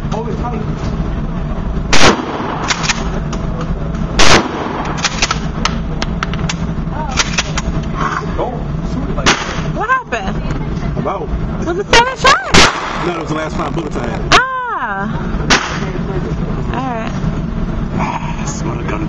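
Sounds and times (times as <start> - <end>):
loud close gunshots: 1.9 - 3.1, 4.2 - 5.5, 9.2 - 9.8, 12.5 - 13.3, 15.5 - 16.0
quieter gunshots: 1.9 - 3.1, 4.2 - 5.6, 9.2 - 9.8, 12.5 - 13.2, 15.4 - 16.0.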